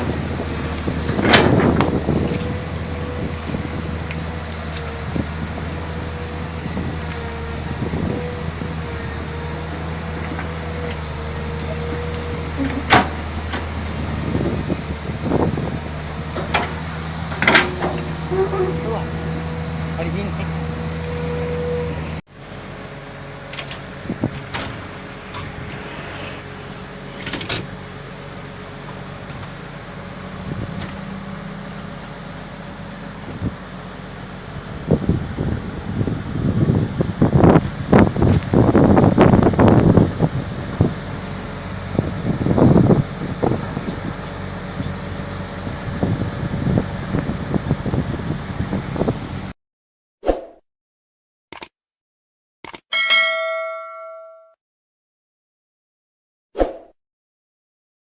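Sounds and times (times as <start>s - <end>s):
excavator diesel engine running: 0.0s - 49.5s.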